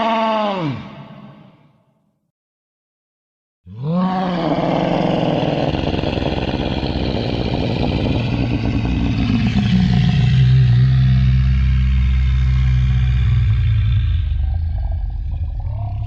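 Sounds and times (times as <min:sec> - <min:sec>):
dinosaur roar: 0:03.7 - 0:16.0.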